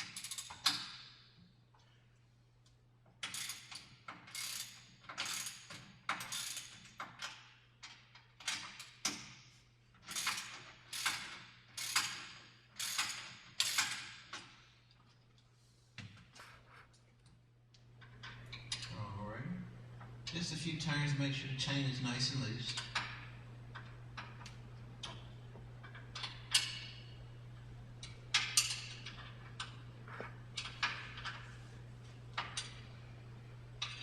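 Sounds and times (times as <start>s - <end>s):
ratchet wrench clicking: 10.1s - 12.2s, 12.8s - 14.1s.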